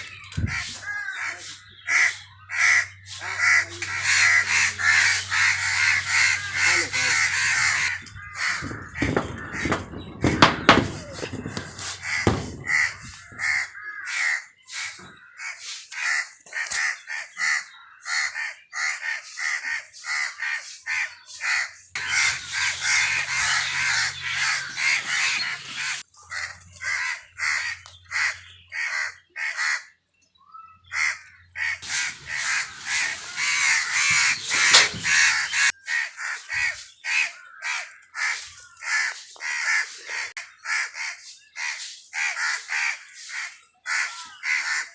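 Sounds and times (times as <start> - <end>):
crows cawing: 0.0 - 44.9.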